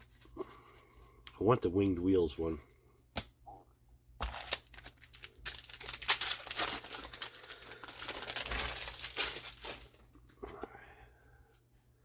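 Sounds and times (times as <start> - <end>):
foil wrapper crinkling and tearing: 4.2 - 10.1.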